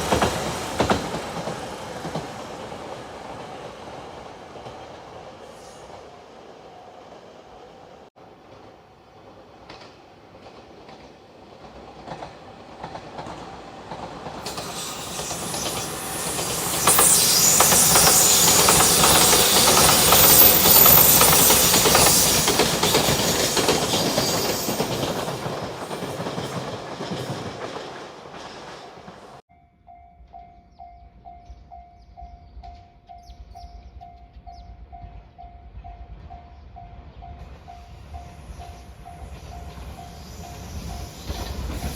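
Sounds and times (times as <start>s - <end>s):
train wheels clattering over rail joints: 0.0s - 2.8s, 9.6s - 29.4s.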